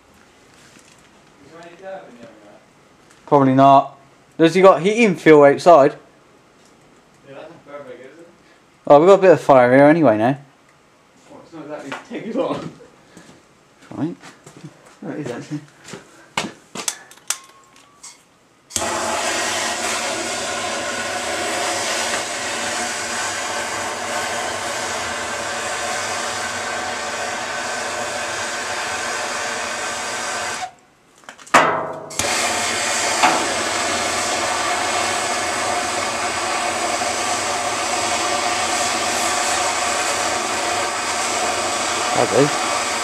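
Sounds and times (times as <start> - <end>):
electric blower motor whirring: 18.7 - 30.8, 32.1 - 43.0.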